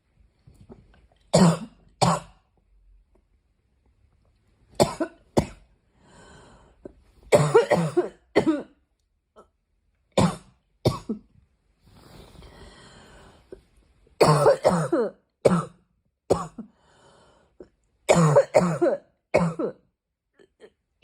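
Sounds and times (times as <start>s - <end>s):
girl coughing: 7.3s - 8.8s, 10.2s - 11.2s, 14.2s - 16.7s, 18.1s - 19.8s.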